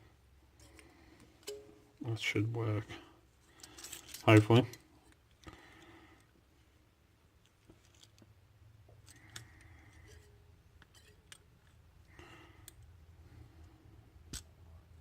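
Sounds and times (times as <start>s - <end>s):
lock picking clicks and scraping: 9.0s - 11.8s.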